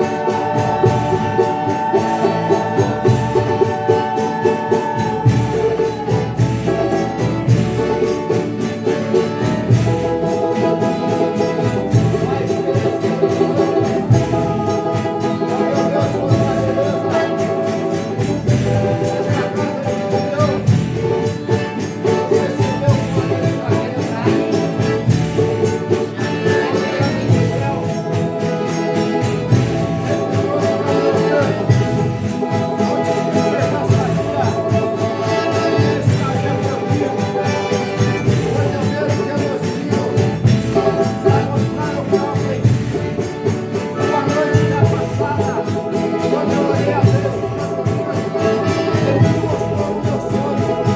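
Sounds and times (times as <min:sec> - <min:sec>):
tambourine jingling: 0:00.0 - 0:50.9.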